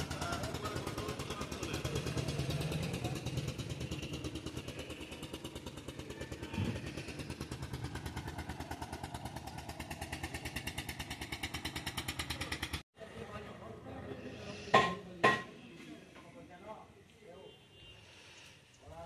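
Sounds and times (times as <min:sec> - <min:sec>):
motorcycle engine puttering: 0:00.0 - 0:12.8.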